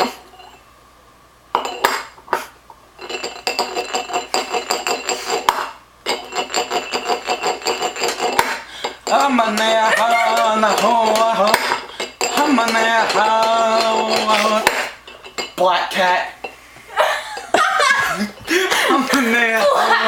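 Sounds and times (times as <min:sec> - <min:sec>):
fork tapping on cups: 0:01.6 - 0:15.6
person singing wavering tune: 0:09.8 - 0:11.2.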